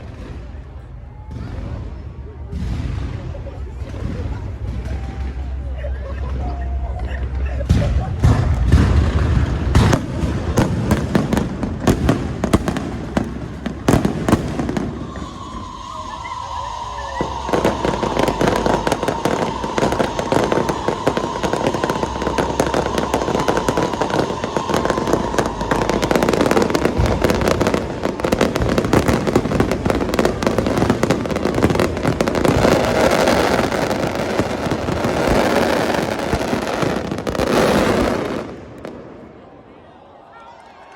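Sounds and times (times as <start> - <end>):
fireworks bangs and crackling: 0.0 - 39.8
steady whistle-like tone: 14.4 - 37.6.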